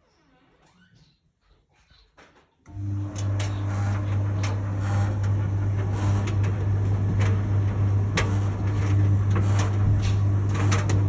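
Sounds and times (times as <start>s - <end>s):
clothes dryer humming: 2.6s - 11.0s.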